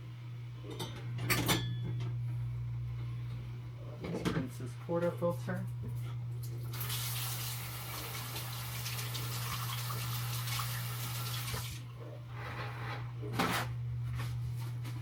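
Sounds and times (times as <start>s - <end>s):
steady low hum: 0.0s - 6.8s
tap water running: 6.5s - 11.8s.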